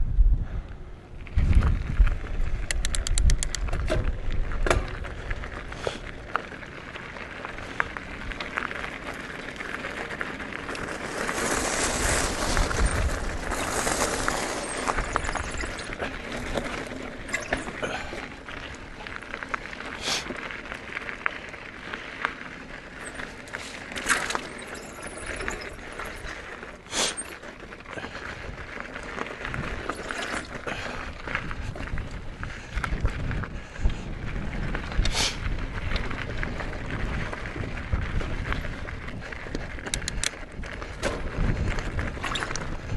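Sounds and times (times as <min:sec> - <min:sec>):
wind buffeting microphone: 0:00.0 - 0:06.3, 0:11.6 - 0:17.3, 0:28.0 - 0:42.9
bike tyres on dirt and gravel: 0:00.0 - 0:42.9
bike rattles and clicks: 0:00.5 - 0:42.9.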